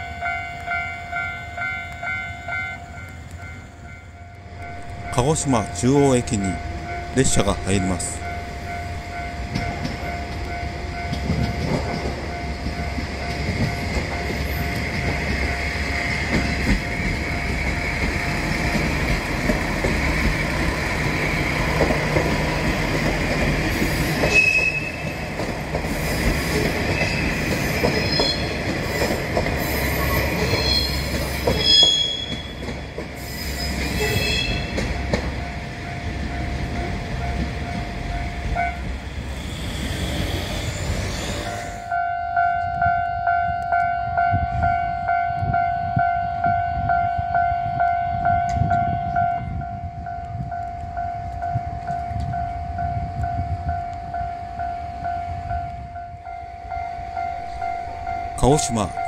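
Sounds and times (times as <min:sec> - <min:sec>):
train wheels rumbling and clacking: 0:00.0 - 0:42.0
high wheel squeal: 0:23.8 - 0:25.2, 0:25.9 - 0:32.6, 0:33.2 - 0:34.8, 0:39.1 - 0:41.9.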